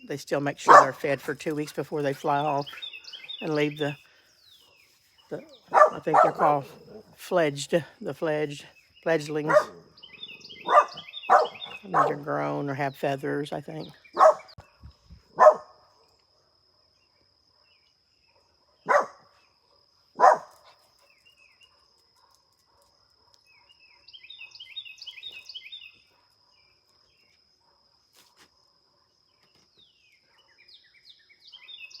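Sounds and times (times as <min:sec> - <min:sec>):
birds chirping: 0:00.0 - 0:16.2, 0:17.0 - 0:21.8, 0:22.7 - 0:27.8, 0:29.3 - 0:32.0
dog barking: 0:00.7 - 0:01.0, 0:05.6 - 0:07.1, 0:09.5 - 0:09.9, 0:10.6 - 0:12.2, 0:14.2 - 0:14.6, 0:15.3 - 0:15.8, 0:18.4 - 0:19.3, 0:20.2 - 0:20.7.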